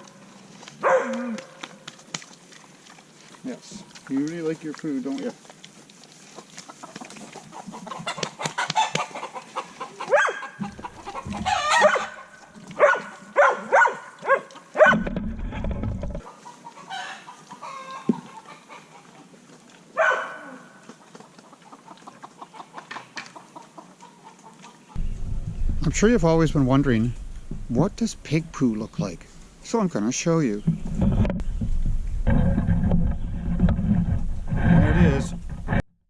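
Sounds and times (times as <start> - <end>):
chickens clucking: 4.1 - 13.3, 16.2 - 19.6, 20.5 - 25.1
low rumble: 25.0 - 29.7, 30.6 - 35.8.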